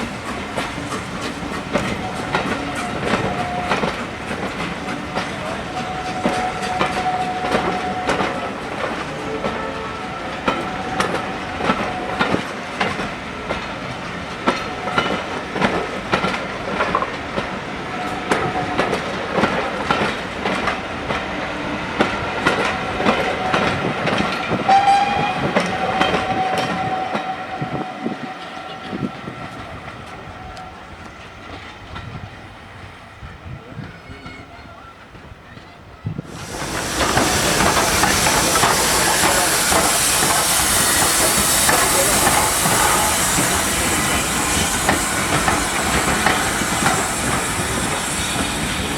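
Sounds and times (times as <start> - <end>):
loud hiss of steam: 0.0 - 17.0, 36.2 - 48.9
train wheels clicking over rail joints: 0.0 - 27.3, 36.2 - 48.9.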